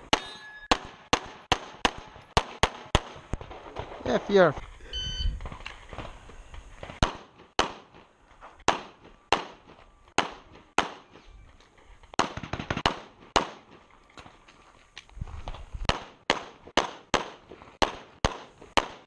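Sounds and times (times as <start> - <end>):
gunshots: 0.0 - 4.5, 6.8 - 11.2, 12.2 - 13.8, 15.9 - 19.0.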